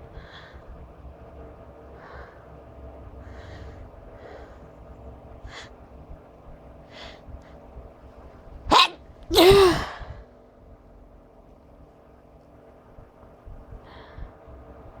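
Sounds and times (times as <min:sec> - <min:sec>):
person sneezing: 0:08.7 - 0:10.0
sharp inhalations: 0:08.7 - 0:10.2.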